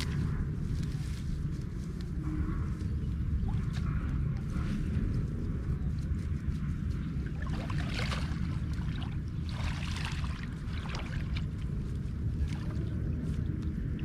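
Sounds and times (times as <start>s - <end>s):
water splashing and sloshing: 0.0s - 1.9s, 2.7s - 4.8s, 6.8s - 14.0s
steady low rumble: 0.0s - 14.0s.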